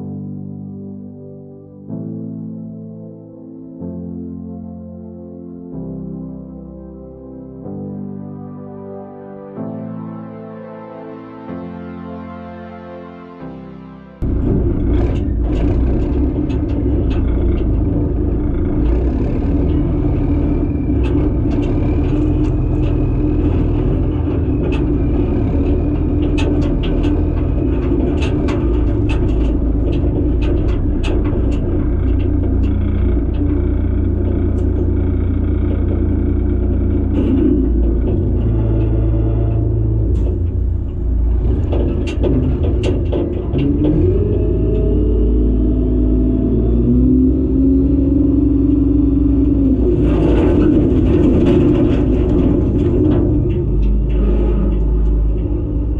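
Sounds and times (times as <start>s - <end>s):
excavator diesel engine running: 14.2s - 55.9s.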